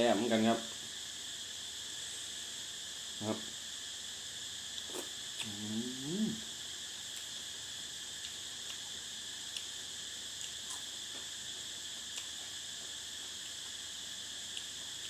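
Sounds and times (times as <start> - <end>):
cicadas droning: 0.0 - 15.0.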